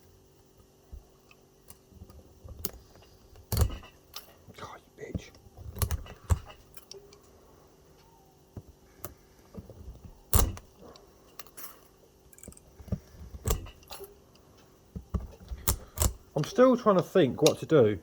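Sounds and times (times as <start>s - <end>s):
metallic clicks of pliers: 15.6s - 16.2s.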